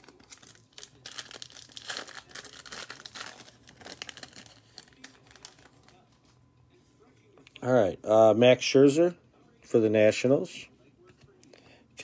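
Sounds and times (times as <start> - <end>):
wrapper and cards crinkling: 0.0 - 6.1.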